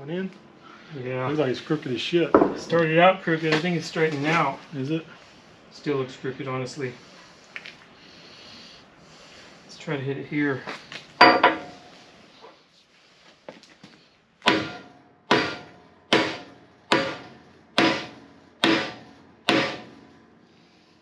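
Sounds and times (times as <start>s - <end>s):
hammer striking steel: 11.2s - 11.8s, 14.5s - 20.0s.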